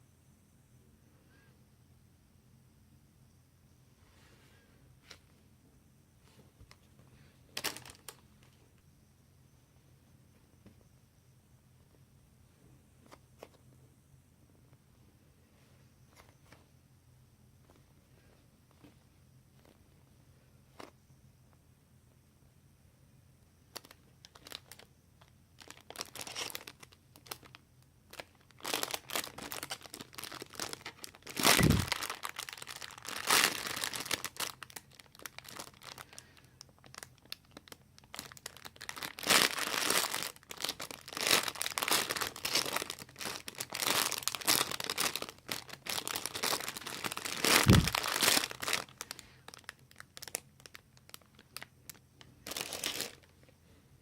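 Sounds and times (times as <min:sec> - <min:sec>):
packaging crinkling: 0:07.6 - 0:08.2, 0:23.7 - 0:24.9, 0:25.6 - 0:53.3.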